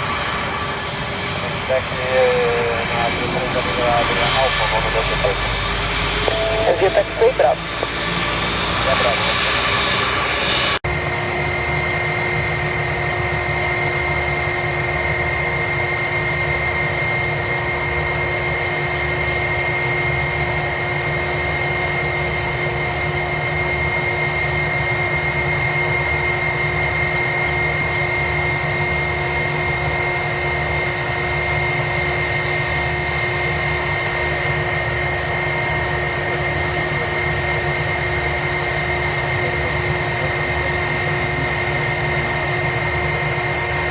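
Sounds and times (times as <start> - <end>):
jet engines idling: 0.0 - 43.9.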